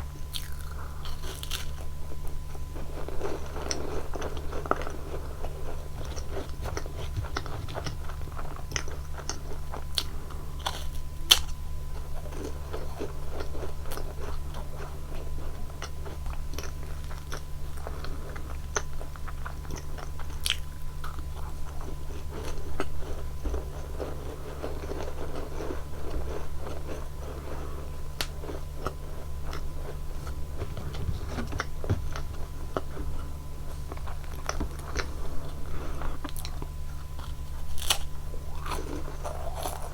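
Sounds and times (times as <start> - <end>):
crunching and chewing cookies: 0.0 - 39.9
steady low hum: 0.0 - 39.9.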